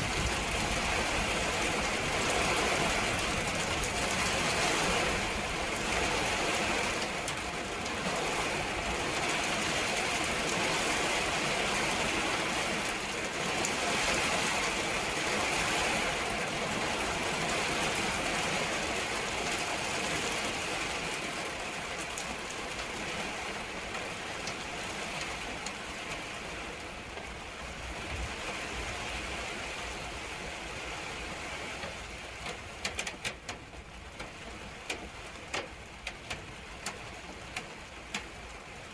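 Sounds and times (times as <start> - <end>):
rain falling: 0.0 - 38.9.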